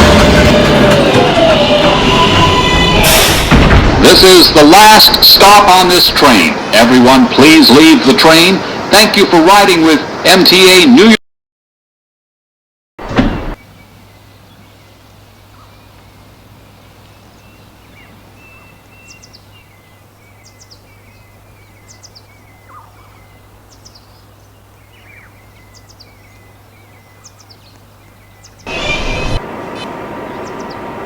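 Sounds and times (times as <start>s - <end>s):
brief loud noise: 0.0s - 4.0s
small birds chirping: 13.6s - 31.0s.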